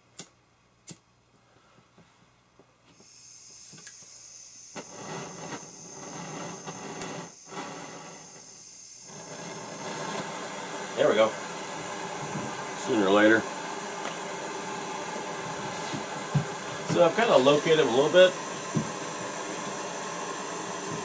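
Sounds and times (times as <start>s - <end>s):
rushing hiss of blowing air: 4.7s - 21.0s.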